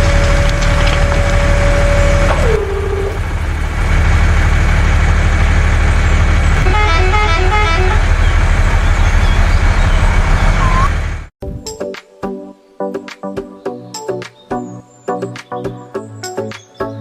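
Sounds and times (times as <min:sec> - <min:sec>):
truck engine rumbling: 0:00.0 - 0:11.3
horn toot: 0:06.5 - 0:11.0
quick melodic beeps: 0:09.8 - 0:10.9.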